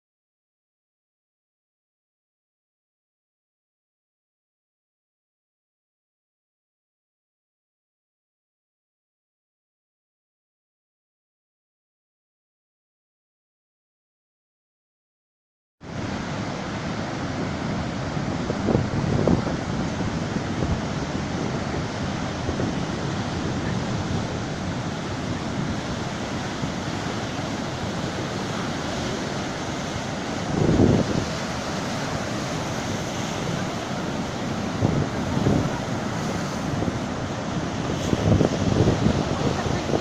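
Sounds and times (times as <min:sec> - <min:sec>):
surf washing in: 0:15.8 - 0:40.0
wind buffeting microphone: 0:17.2 - 0:40.0.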